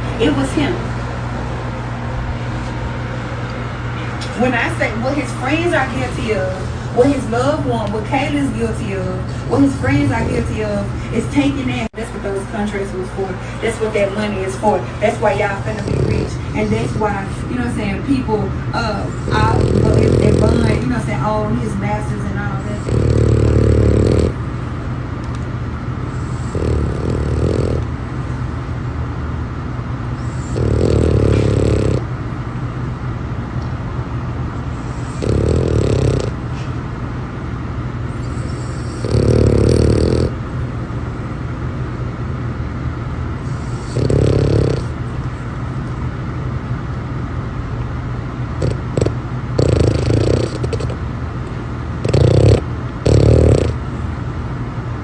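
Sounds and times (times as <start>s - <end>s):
dog snoring loudly: 15.4s - 17.4s, 18.9s - 21.0s, 22.5s - 24.4s, 26.1s - 27.9s, 30.2s - 32.1s, 34.7s - 36.4s, 38.1s - 40.4s, 43.4s - 45.0s, 48.6s - 51.0s, 52.0s - 53.8s.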